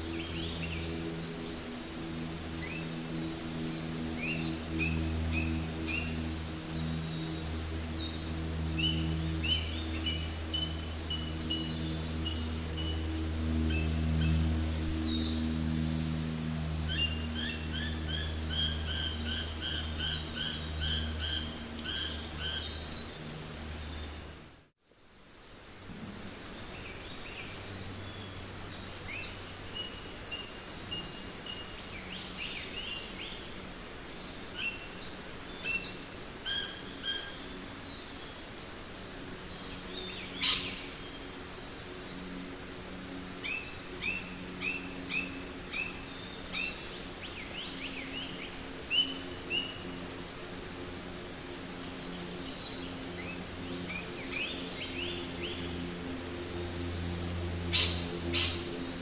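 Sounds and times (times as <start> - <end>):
low hum: 0.0 - 59.0
birds calling: 39.2 - 59.0.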